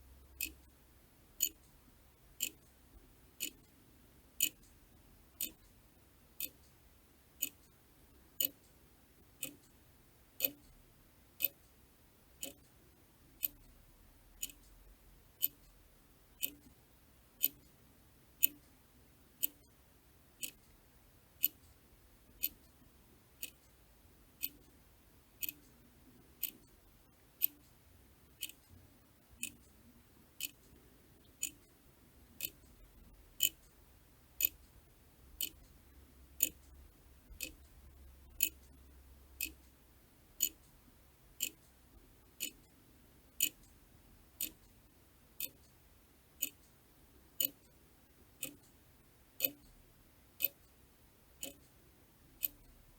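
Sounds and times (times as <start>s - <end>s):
clock ticking: 0.4s - 0.6s, 1.4s - 1.8s, 2.4s - 2.8s, 3.4s - 3.8s, 4.4s - 4.8s, 5.4s - 5.7s, 6.4s - 6.8s, 7.4s - 7.8s, 8.4s - 8.8s, 9.4s - 9.8s, 10.4s - 10.8s, 11.4s - 11.7s, 12.4s - 12.7s, 13.4s - 13.8s, 14.4s - 14.8s, 15.4s - 16.8s, 17.4s - 17.8s, 18.4s - 18.7s, 19.4s - 19.8s, 20.4s - 20.7s, 21.4s - 22.8s, 23.4s - 23.7s, 24.4s - 24.8s, 25.4s - 25.8s, 26.4s - 26.8s, 27.4s - 27.8s, 28.4s - 28.8s, 29.4s - 29.8s, 30.4s - 31.7s, 32.3s - 33.8s, 34.4s - 39.8s, 40.4s - 40.8s, 41.4s - 43.8s, 44.4s - 44.8s, 45.4s - 45.8s, 46.4s - 46.8s, 47.4s - 47.8s, 48.4s - 48.8s, 49.4s - 49.8s, 50.4s - 50.8s, 51.4s - 52.9s.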